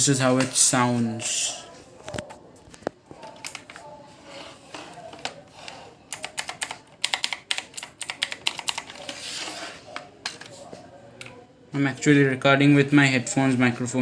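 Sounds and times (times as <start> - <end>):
mechanical keyboard typing: 6.1 - 9.2.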